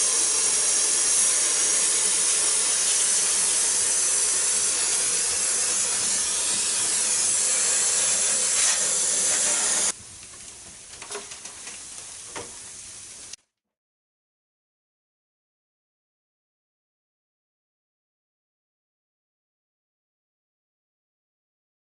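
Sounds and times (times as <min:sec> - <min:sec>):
spray hissing: 0:00.0 - 0:10.0.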